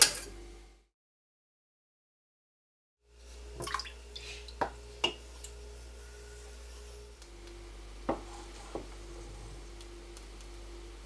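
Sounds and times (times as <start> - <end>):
kitchenware clinking: 0.0 - 0.3
steady low hum: 3.1 - 11.0.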